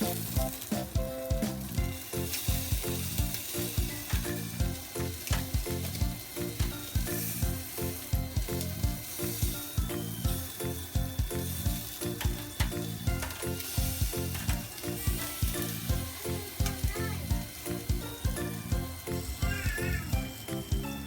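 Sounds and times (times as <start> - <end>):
background music with a beat: 0.0 - 21.0
food sizzling in a pan: 0.0 - 21.0.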